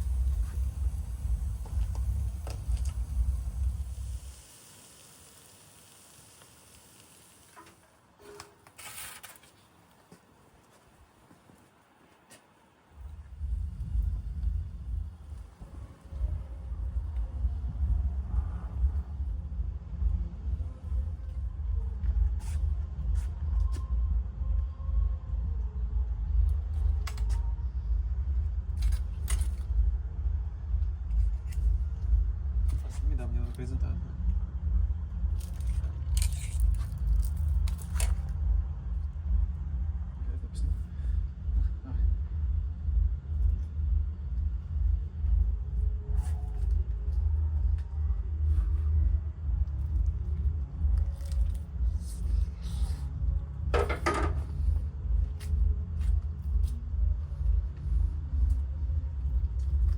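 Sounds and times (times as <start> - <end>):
low rumble: 0.0 - 4.6, 12.9 - 59.9
meat sizzling: 0.1 - 7.6.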